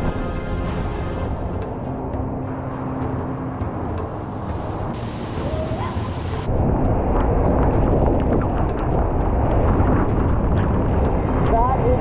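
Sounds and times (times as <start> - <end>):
wind buffeting microphone: 1.4 - 12.0
waterfall roaring: 2.5 - 6.6.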